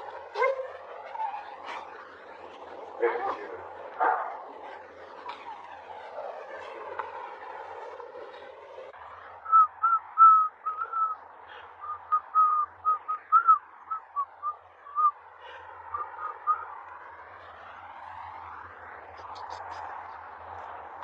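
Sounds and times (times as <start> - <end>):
puppy whining: 0.4 - 2.1.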